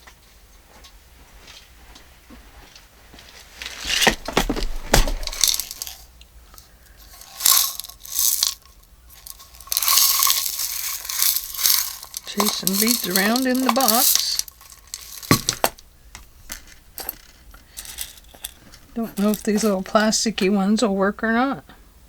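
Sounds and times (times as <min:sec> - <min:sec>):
beads rattling in a box: 0:05.1 - 0:06.1, 0:06.9 - 0:20.4.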